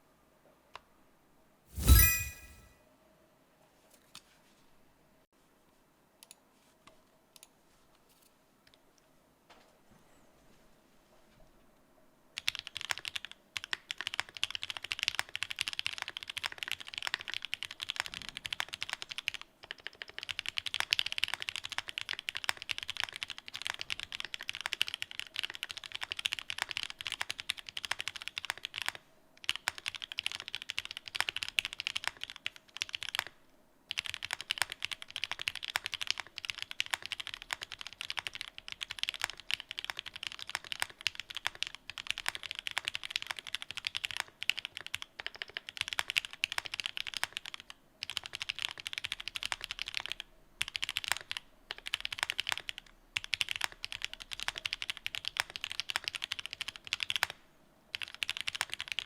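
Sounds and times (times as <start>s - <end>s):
fast typing on mechanical keyboard: 12.4s - 59.0s.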